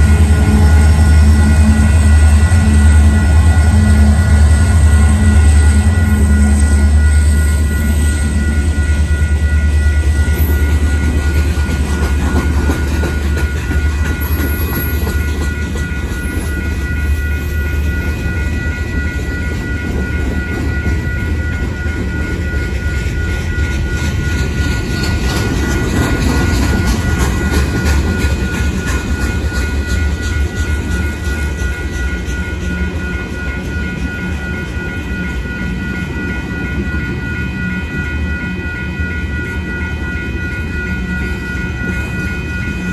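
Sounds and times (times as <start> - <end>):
crossing warning bell: 0.0 - 42.9
freight train rumbling: 0.0 - 42.9
wheels clicking over rail joints: 23.0 - 32.7.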